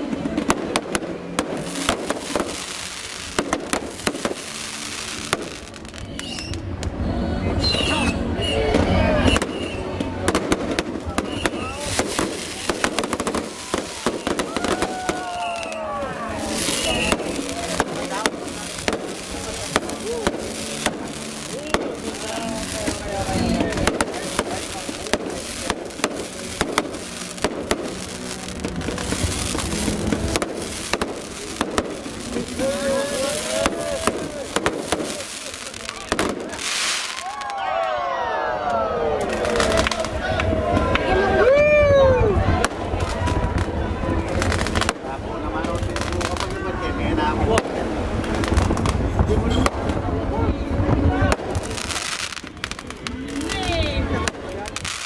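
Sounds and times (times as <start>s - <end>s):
fireworks bangs: 0.0s - 7.0s, 7.6s - 37.7s, 39.2s - 41.4s, 42.3s - 55.0s
fireworks whistles: 1.5s - 6.7s, 7.6s - 37.4s.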